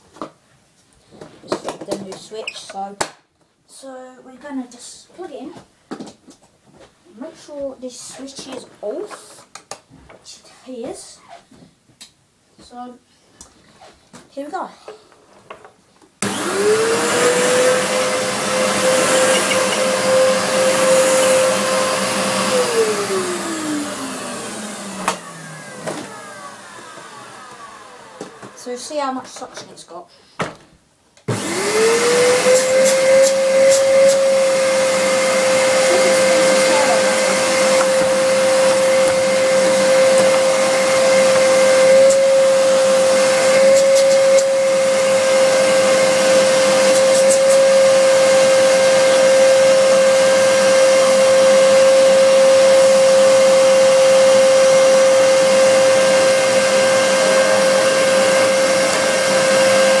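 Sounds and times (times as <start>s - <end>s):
vacuum cleaner motor whine: 16.2s - 28.7s, 31.3s - 60.0s.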